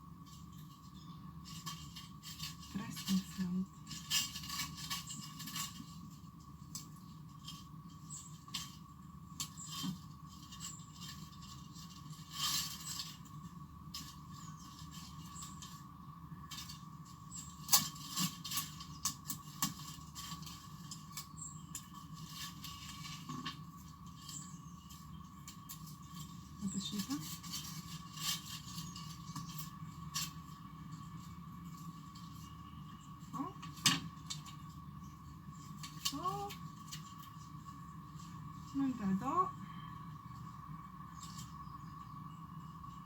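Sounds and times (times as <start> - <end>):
faint hum: 18.5 - 43.0.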